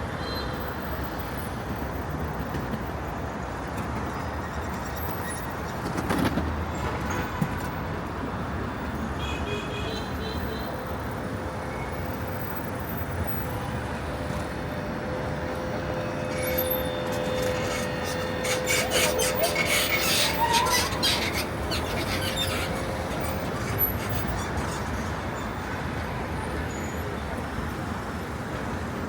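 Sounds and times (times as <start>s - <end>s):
street traffic: 0.0s - 29.0s
steady whine: 13.8s - 24.3s.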